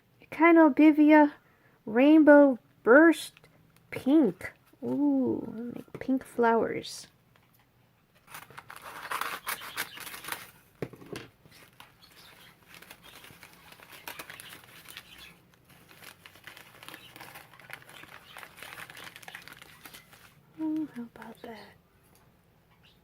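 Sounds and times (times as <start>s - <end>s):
packaging crinkling and tearing: 8.2s - 10.8s, 11.5s - 21.6s.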